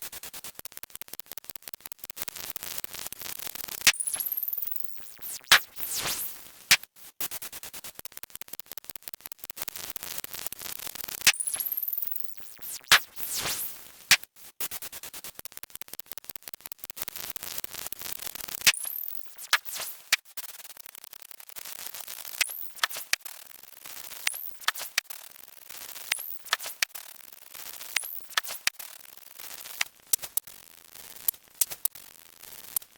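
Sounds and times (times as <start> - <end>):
crackling hiss: 20.9 - 32.9
sharp clicks: 22.4 - 23.2, 24.2 - 25.1, 26.1 - 27.0, 27.8 - 29.0, 29.6 - 30.5, 31.2 - 32.0.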